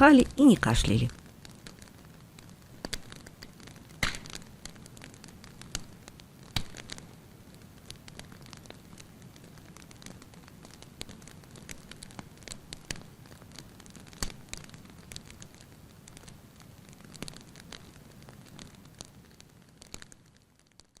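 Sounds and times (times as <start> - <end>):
low steady hum: 0.0 - 12.3
crackling clicks and pops: 0.0 - 21.0.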